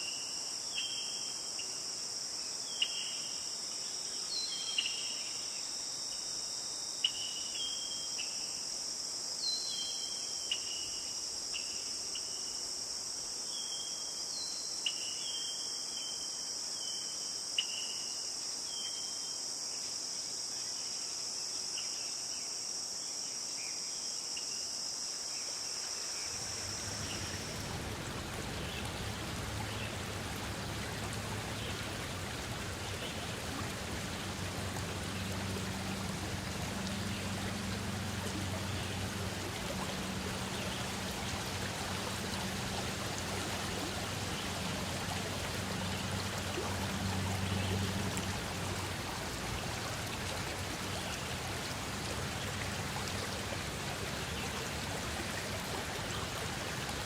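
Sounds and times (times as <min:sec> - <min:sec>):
insects chirring: 0:00.0 - 0:57.0
running water: 0:26.0 - 0:57.0.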